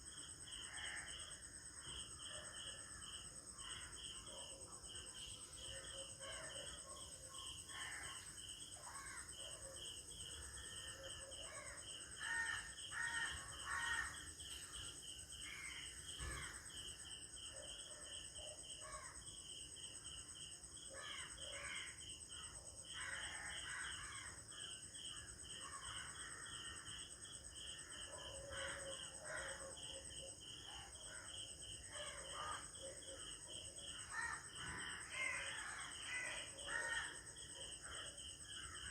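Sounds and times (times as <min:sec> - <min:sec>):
insects chirping: 0:00.0 - 0:38.9
crows cawing: 0:11.6 - 0:14.3, 0:34.1 - 0:37.2.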